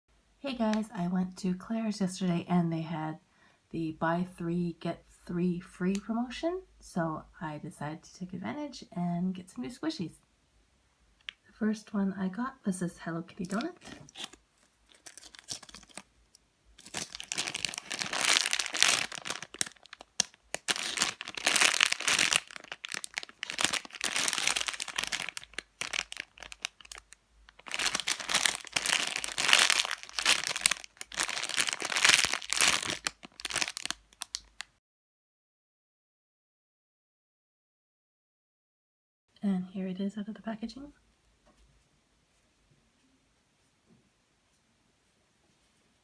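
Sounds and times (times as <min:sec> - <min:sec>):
plastic packaging crinkling: 0:13.4 - 0:34.7.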